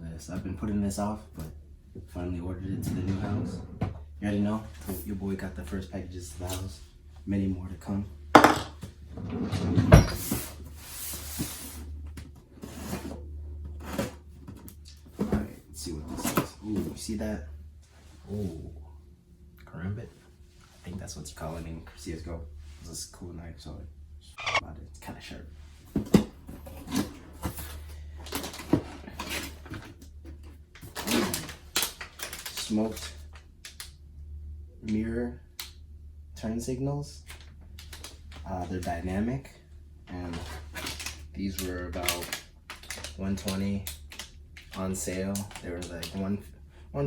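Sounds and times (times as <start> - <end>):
packaging rustling and clicking: 30.8 - 33.9, 40.4 - 41.2.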